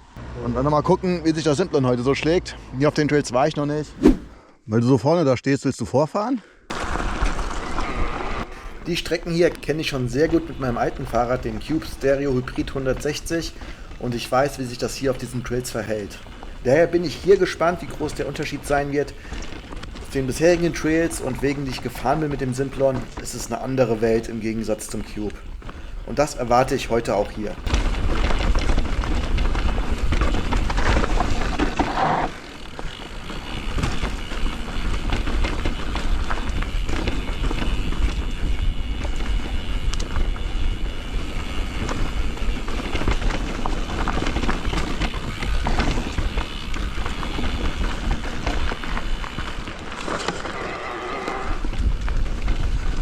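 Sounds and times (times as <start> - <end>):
bike clattering over bumps: 6.7 - 53.0
tyres crunching over dirt: 6.7 - 53.0
wind rumble on microphone: 51.4 - 53.0.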